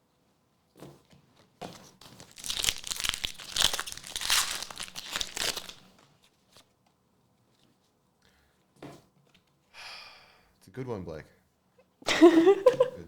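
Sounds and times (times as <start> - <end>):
foil pack tearing and crinkling: 2.0 - 6.0.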